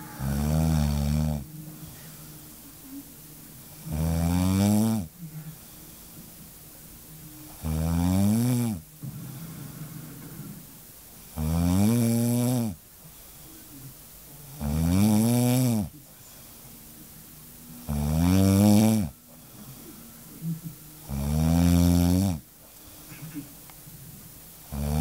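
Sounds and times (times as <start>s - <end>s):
woman snoring: 0.0s - 6.2s, 7.2s - 12.8s, 13.6s - 16.1s, 17.5s - 22.5s, 24.7s - 25.0s
quiet breathing: 0.0s - 25.0s.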